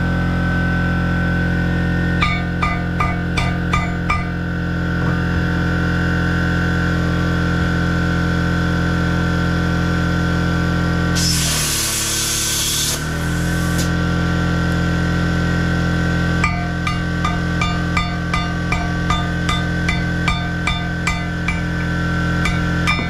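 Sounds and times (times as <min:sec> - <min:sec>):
loud hiss: 0:11.2 - 0:13.9
machine humming: 0:11.2 - 0:23.0.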